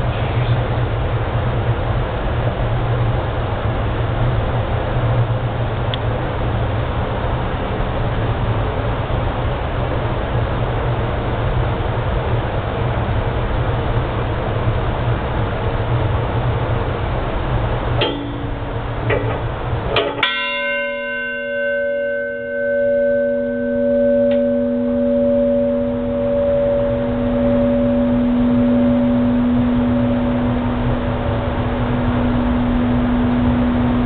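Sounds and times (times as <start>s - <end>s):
ship's bell struck: 18.0s - 34.0s.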